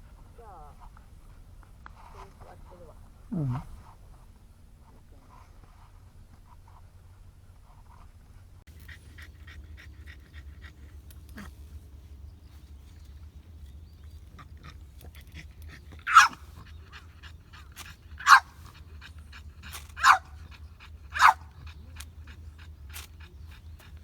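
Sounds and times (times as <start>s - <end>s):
dog panting: 8.6s - 24.0s
dog barking: 16.0s - 16.6s, 18.2s - 18.6s, 20.0s - 20.4s, 21.1s - 21.5s.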